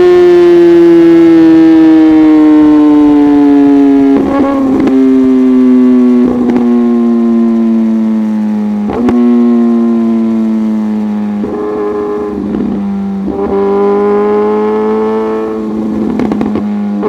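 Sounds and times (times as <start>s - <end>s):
exhaust crackling: 0.0s - 17.0s
motorcycle engine revving: 0.0s - 17.0s.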